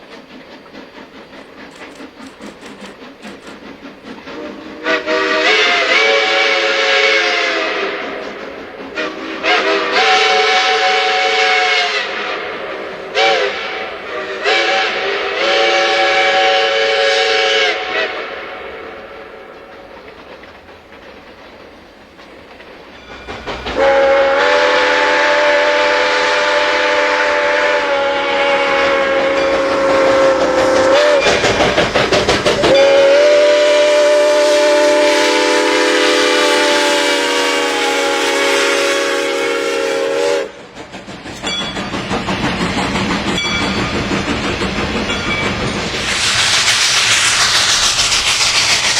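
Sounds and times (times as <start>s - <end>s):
train wheels clattering over rails: 0.0s - 11.5s, 18.3s - 26.2s, 28.8s - 37.4s, 38.7s - 48.9s
train horn blasts: 4.3s - 8.2s, 8.9s - 19.4s, 23.8s - 31.4s, 32.7s - 40.5s.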